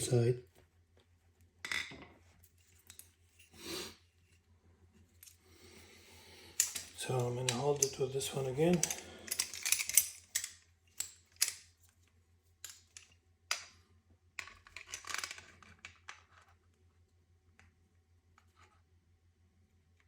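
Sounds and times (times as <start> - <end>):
clicks and taps of metal parts: 6.6 - 8.0.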